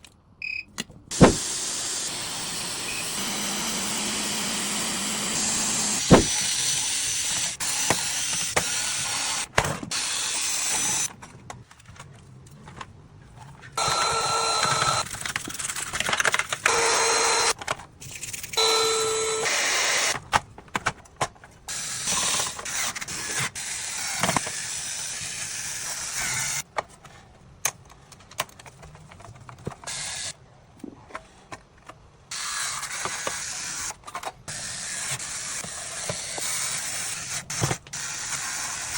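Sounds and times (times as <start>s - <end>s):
air duster hissing blasts: 1.1s - 11.1s.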